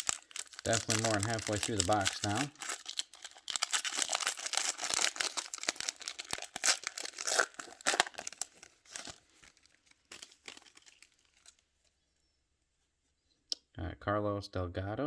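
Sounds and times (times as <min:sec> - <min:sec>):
wrapper tearing and crinkling: 0:00.0 - 0:11.7.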